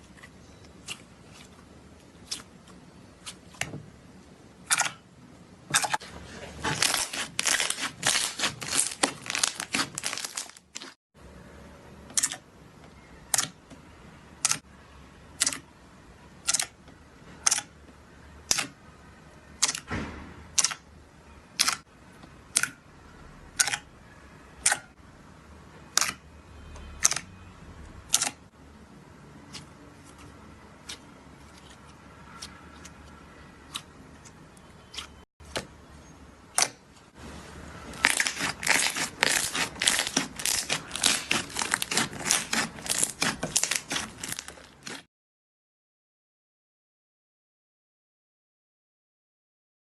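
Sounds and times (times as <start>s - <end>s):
sharp slime clicks: 4.6s - 5.0s, 12.1s - 12.4s, 13.3s - 13.6s, 14.4s - 14.6s, 15.4s - 15.6s, 16.4s - 16.8s, 17.4s - 17.7s, 18.4s - 18.8s, 19.6s - 19.9s, 20.5s - 20.8s, 21.6s - 21.8s, 22.5s - 22.8s, 24.6s - 24.9s, 25.9s - 26.2s, 28.1s - 28.4s, 36.5s - 36.8s
slime crackling and crunching: 5.8s - 11.0s, 37.8s - 45.1s.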